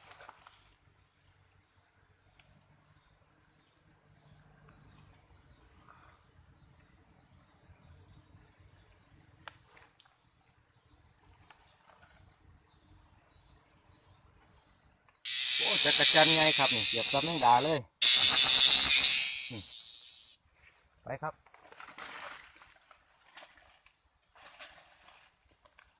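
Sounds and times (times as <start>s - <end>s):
forest insects chorus: 0.0s - 25.9s.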